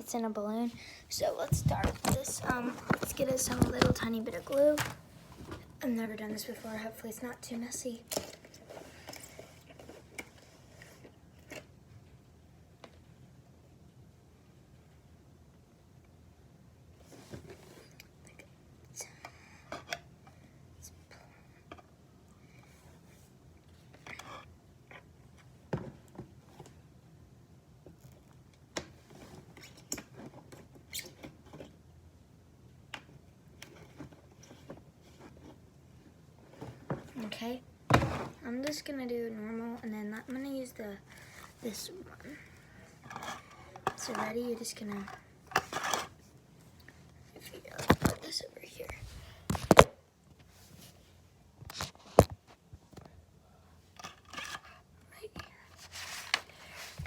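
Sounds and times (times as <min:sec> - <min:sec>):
soft rustle: 0:55.5 - 0:57.0.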